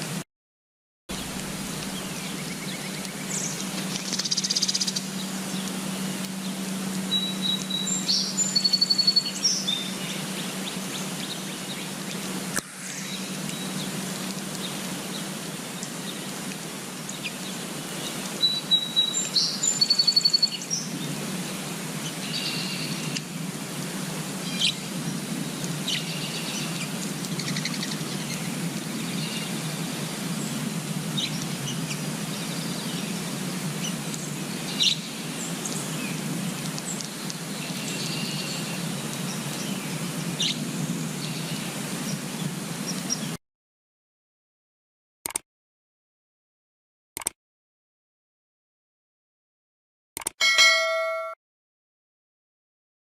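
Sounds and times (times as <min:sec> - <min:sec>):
outdoor background noise: 0:00.0 - 0:00.2, 0:01.1 - 0:43.4
songbirds chirping and singing: 0:01.1 - 0:12.3, 0:13.0 - 0:23.2, 0:31.2 - 0:43.4.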